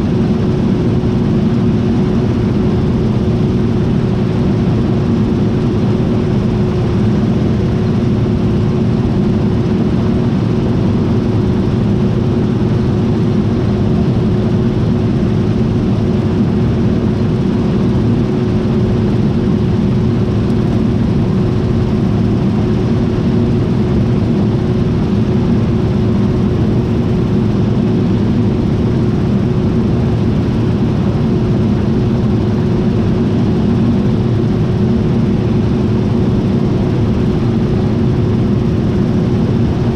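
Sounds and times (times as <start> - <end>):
combine harvester rumbling: 0.0 - 39.9.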